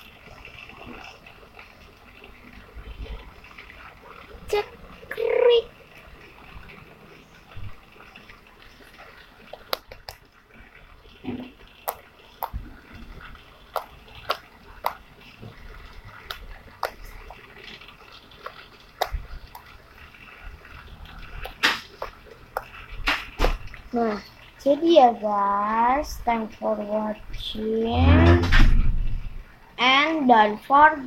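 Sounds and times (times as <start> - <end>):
slime squishing: 8.8 - 10.2, 11.2 - 24.3.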